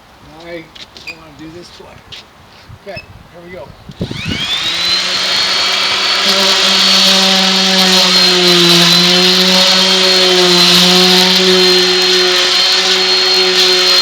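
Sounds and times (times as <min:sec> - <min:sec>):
orbital sander motor whine: 0:04.0 - 0:14.0.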